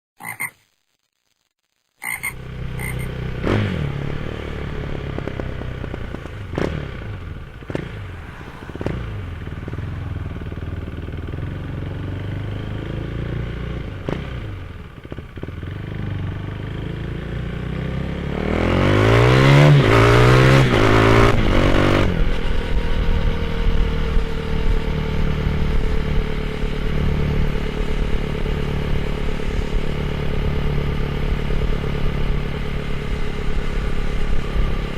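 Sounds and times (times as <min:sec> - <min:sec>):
motorcycle engine idling and revving: 0:02.0 - 0:34.9.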